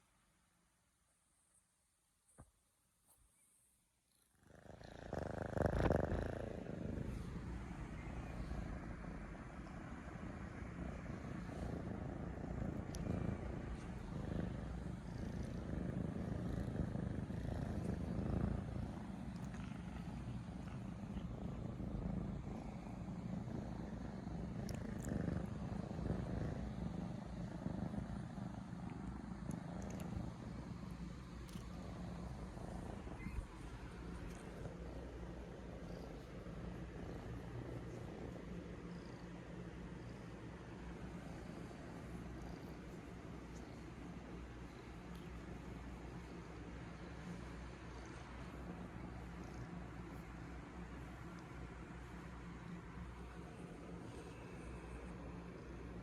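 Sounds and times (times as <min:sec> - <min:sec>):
kittens purring: 0:04.1 - 0:56.0.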